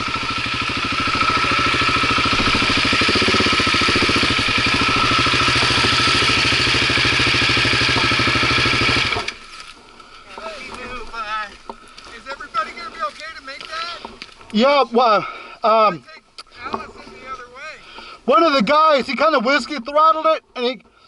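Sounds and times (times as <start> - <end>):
motorcycle engine running: 0.0 - 14.3.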